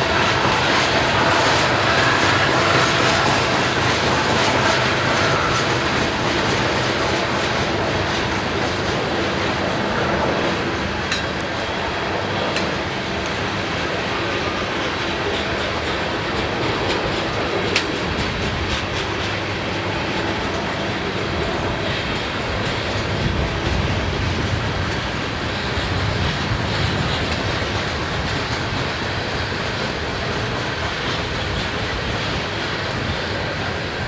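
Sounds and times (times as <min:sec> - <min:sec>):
train wheels rumbling on rail: 0:00.0 - 0:34.0.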